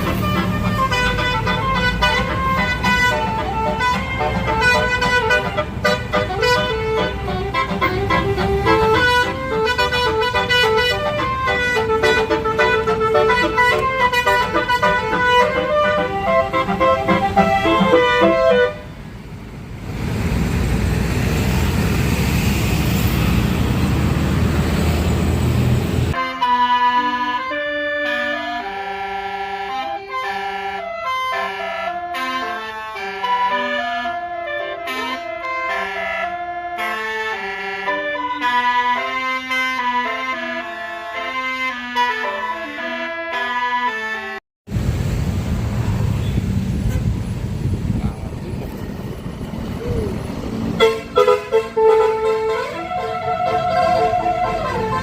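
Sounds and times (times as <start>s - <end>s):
stepped horn-like notes: 0.0s - 18.9s, 26.1s - 44.4s, 50.7s - 55.0s
bus air horn melody: 0.0s - 19.0s, 26.1s - 44.4s, 50.7s - 55.0s
heavy vehicle engine passing: 0.0s - 26.2s, 44.7s - 55.0s.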